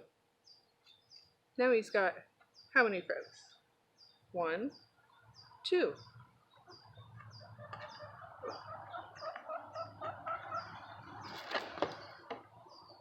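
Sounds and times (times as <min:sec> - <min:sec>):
small bird chirping: 0:00.0 - 0:13.0
hen clucking: 0:04.9 - 0:13.0.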